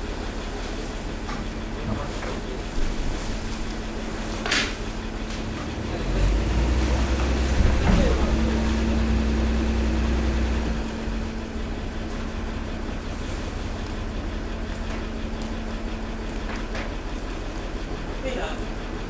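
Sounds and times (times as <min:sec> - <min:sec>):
compactor pump humming: 0:00.0 - 0:19.0
heavy low rumble: 0:05.3 - 0:16.4.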